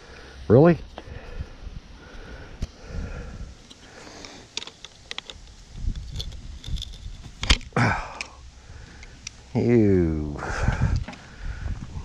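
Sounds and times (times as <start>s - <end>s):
metal tools clicking and scraping: 3.6s - 8.3s.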